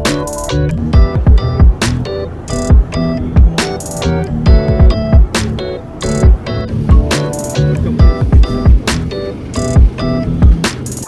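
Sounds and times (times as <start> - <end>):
electronic music with bass kicks: 0.0 - 11.0
keyboard chords: 0.0 - 11.0.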